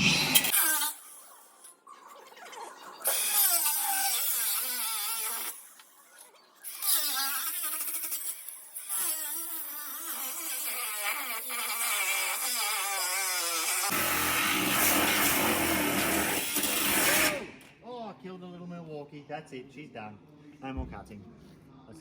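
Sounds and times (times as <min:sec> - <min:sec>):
angle grinder cutting steel: 0:00.0 - 0:01.1, 0:06.7 - 0:17.6.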